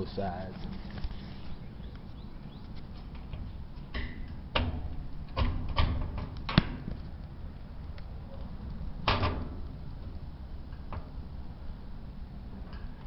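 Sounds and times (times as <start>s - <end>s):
sheet metal knocks and clunks: 3.9s - 6.8s.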